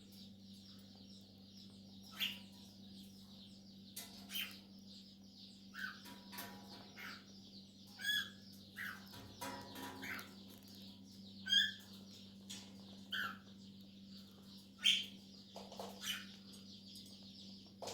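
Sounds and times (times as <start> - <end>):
low electrical hum: 0.0 - 17.9
cockatiels chirping: 2.1 - 2.5, 5.7 - 7.3, 7.9 - 10.8, 11.4 - 12.0, 13.1 - 13.5, 14.8 - 16.5.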